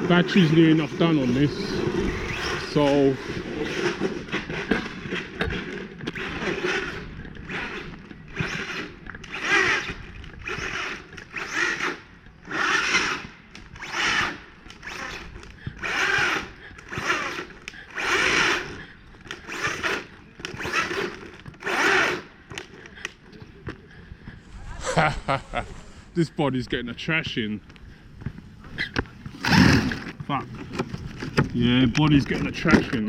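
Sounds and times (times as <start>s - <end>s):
electric motor whining: 0.0s - 22.4s.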